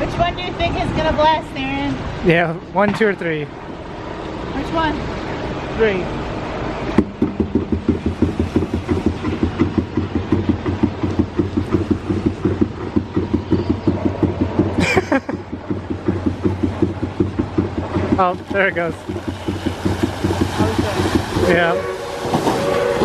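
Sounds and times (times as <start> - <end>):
machine chugging: 6.9 - 23.0.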